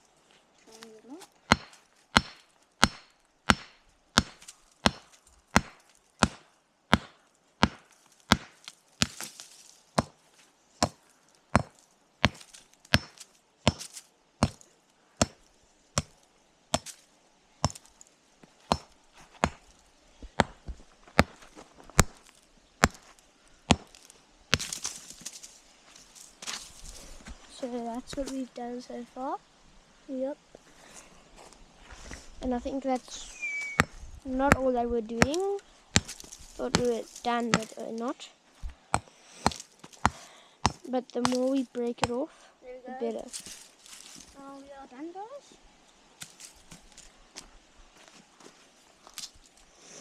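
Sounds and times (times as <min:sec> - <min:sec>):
hammer striking rock: 0:01.5 - 0:09.4, 0:10.0 - 0:10.2, 0:10.8 - 0:14.6, 0:15.2 - 0:17.0, 0:17.6 - 0:17.9, 0:18.7 - 0:19.6, 0:20.4 - 0:21.4, 0:22.0 - 0:23.1, 0:23.7 - 0:24.8, 0:33.7 - 0:37.8, 0:38.9 - 0:42.2.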